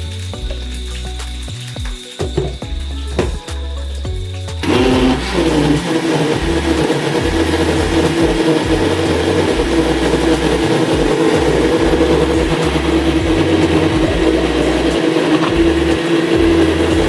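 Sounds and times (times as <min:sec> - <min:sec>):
electric blender running: 0:04.6 - 0:17.0.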